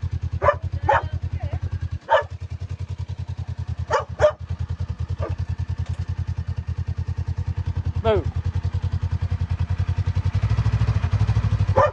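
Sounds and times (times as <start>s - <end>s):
motorcycle engine idling: 0.0s - 11.9s
dog barking: 0.3s - 1.3s, 2.0s - 2.4s, 3.8s - 4.5s, 5.2s - 5.5s, 11.7s - 11.9s.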